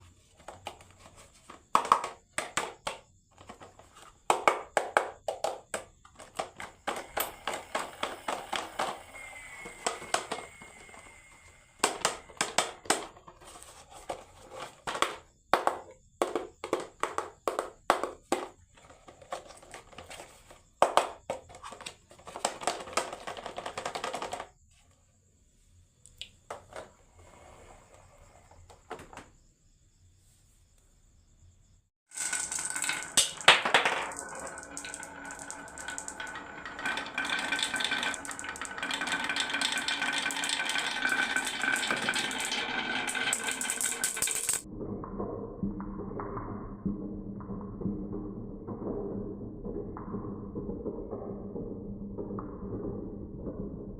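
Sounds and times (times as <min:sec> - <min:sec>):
marbles clacking down a wooden run: 0:04.0 - 0:13.6, 0:20.8 - 0:24.5, 0:32.1 - 0:44.7.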